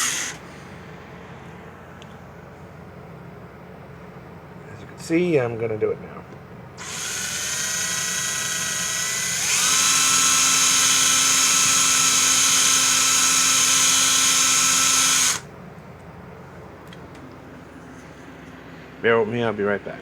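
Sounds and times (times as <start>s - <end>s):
cordless drill whining: 0.0s - 0.4s, 6.8s - 15.5s.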